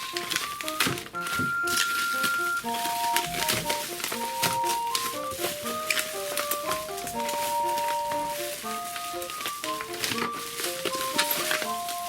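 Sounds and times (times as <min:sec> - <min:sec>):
electronic polyphonic melody: 0:00.0 - 0:12.0
faint clicking crackle: 0:00.0 - 0:12.0.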